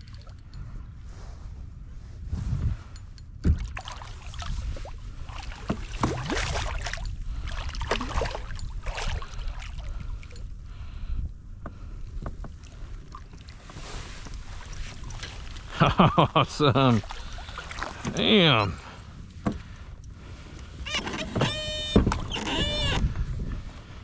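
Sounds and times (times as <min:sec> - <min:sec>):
knocks against a kayak: 0:03.4 - 0:03.7, 0:05.6 - 0:06.6
water splashing: 0:03.5 - 0:10.4, 0:13.1 - 0:18.8.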